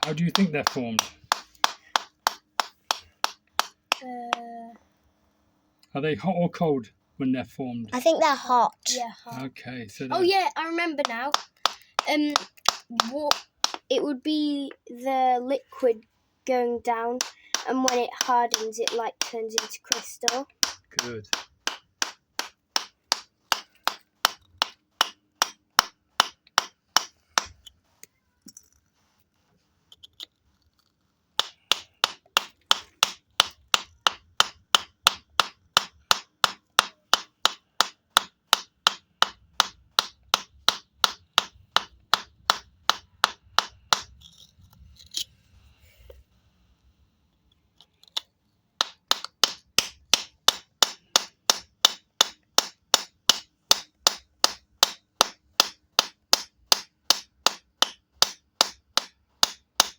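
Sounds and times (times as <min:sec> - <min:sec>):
hammer tapping on stone: 0:00.0 - 0:04.5, 0:10.1 - 0:13.9, 0:16.9 - 0:27.7, 0:31.4 - 0:44.2, 0:48.8 - 0:59.9.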